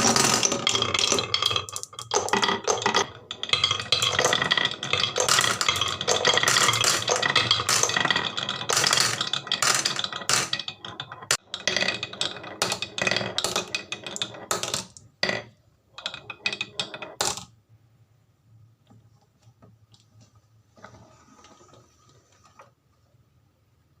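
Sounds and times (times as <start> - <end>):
marbles rolling down wooden run: 0.0 - 17.5.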